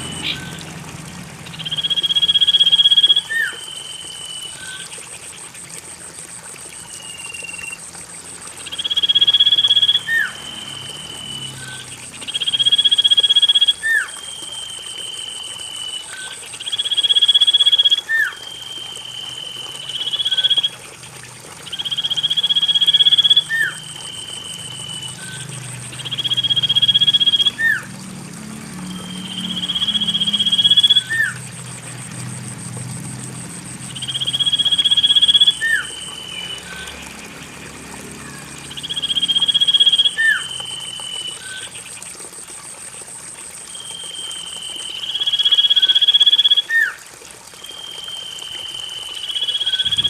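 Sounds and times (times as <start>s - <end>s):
bird whistled trill: 0.0s - 0.6s, 1.6s - 4.8s, 6.9s - 7.8s, 8.7s - 16.3s, 21.7s - 27.9s, 28.9s - 31.4s, 34.0s - 37.0s, 38.2s - 41.7s, 43.8s - 46.9s, 47.6s - 50.0s.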